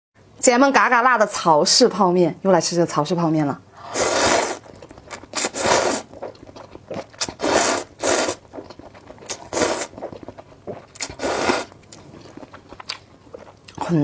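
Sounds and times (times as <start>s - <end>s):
slurping noodles: 3.8s - 12.5s.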